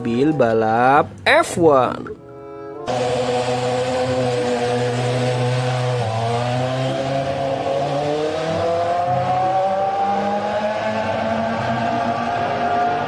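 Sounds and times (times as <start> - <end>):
racing car engine at high revs: 2.9 - 13.0.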